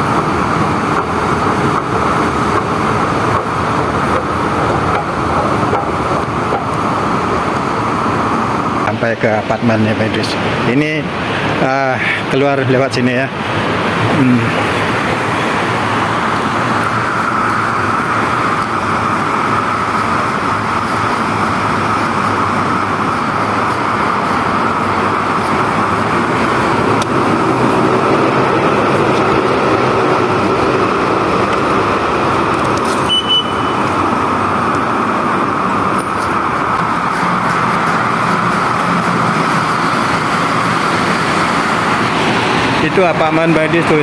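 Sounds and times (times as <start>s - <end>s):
road traffic passing: 0.0s - 44.0s
high-pitched beep: 33.0s - 33.8s.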